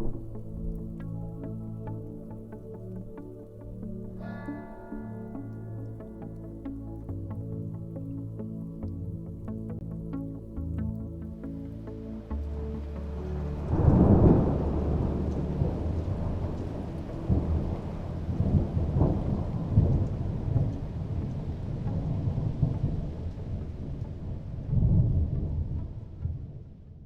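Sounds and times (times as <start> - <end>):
steady rain: 0.0 - 26.6
thunder rumbling: 13.4 - 26.8.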